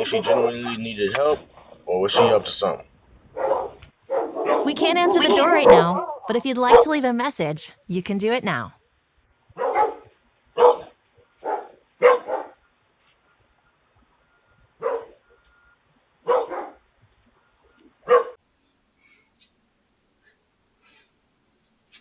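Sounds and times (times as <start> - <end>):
dog barking: 0.0 - 1.4, 2.0 - 6.9, 9.6 - 12.6, 14.8 - 15.2, 16.2 - 16.8, 18.0 - 18.4.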